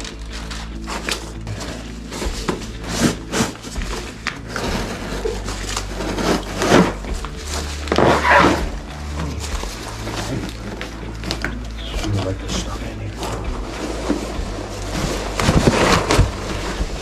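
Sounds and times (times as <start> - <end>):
cardboard box rustling and knocks: 13.5 - 17.0.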